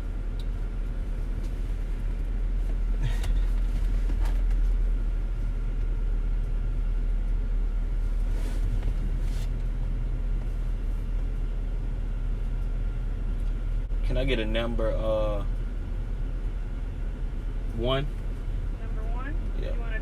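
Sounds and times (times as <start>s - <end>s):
car engine idling: 0.0s - 20.0s
faint clicks and rustles: 0.3s - 11.6s.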